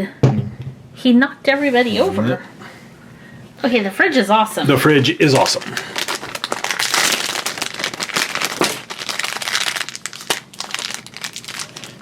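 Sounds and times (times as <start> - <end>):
plastic wrapper crinkling and tearing: 5.2 - 12.0.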